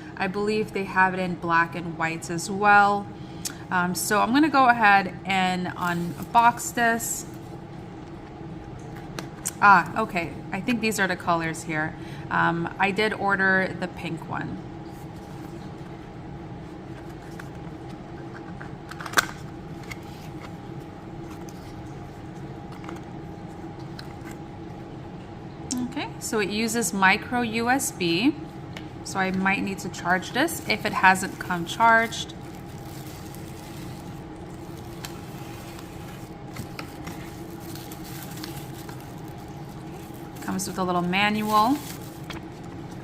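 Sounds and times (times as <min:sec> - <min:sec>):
steady background hum: 0:00.0 - 0:43.0
packaging being unpacked: 0:05.7 - 0:06.6, 0:30.4 - 0:43.0.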